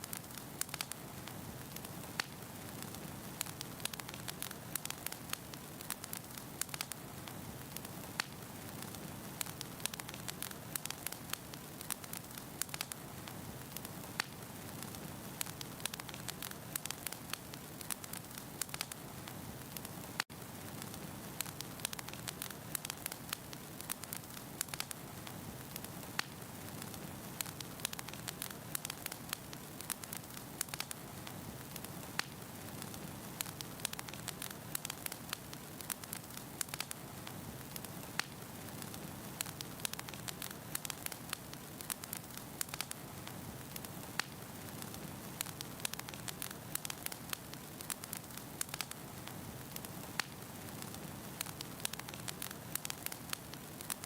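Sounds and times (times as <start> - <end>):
fire crackling and popping: 0.0 - 54.0.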